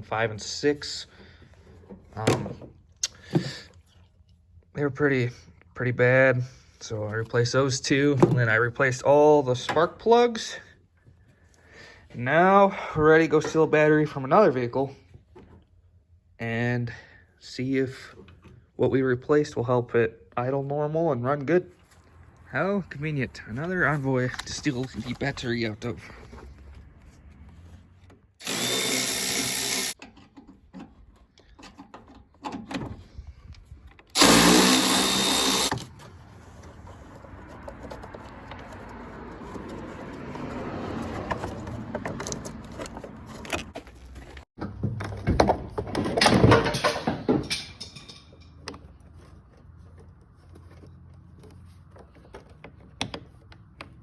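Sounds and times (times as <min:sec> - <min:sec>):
cordless drill whining: 0:28.4 - 0:30.0, 0:34.1 - 0:35.9
tools and parts clunking: 0:29.9 - 0:54.0.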